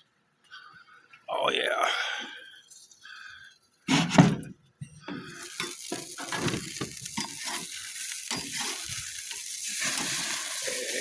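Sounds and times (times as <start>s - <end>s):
patties sizzling in a frying pan: 5.1s - 11.0s.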